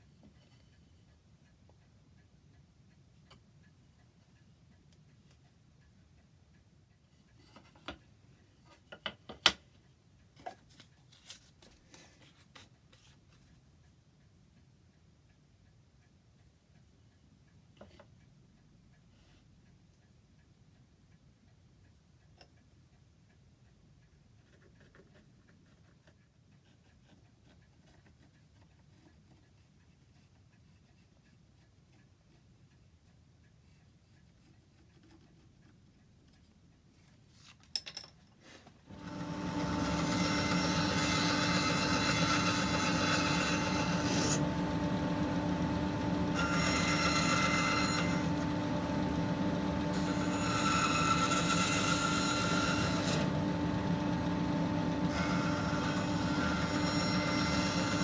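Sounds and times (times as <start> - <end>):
light clicks and scratches: 24.3 - 38.8.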